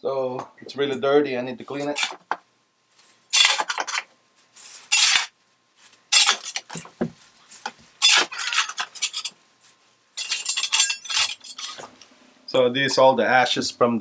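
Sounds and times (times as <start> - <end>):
metal tool scraping ash: 1.7 - 2.2, 3.3 - 4.0, 4.8 - 5.3, 6.1 - 6.8, 8.0 - 9.4, 10.2 - 11.9.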